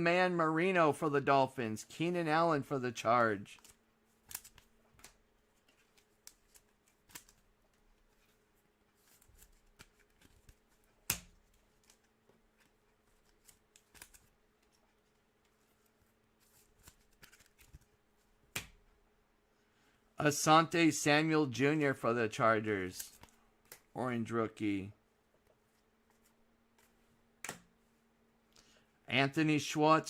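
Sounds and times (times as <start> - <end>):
trading cards being flipped: 3.5 - 18.8, 25.5 - 27.7.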